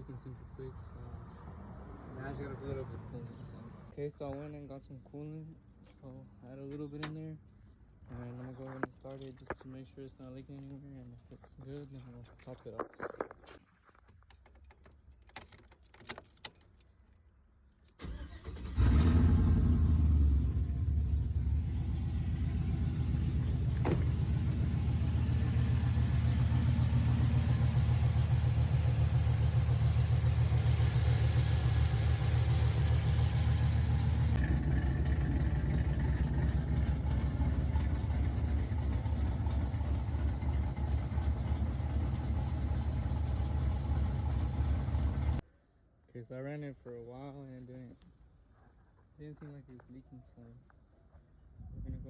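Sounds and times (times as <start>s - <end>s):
pickup engine idling: 19.2s - 45.4s.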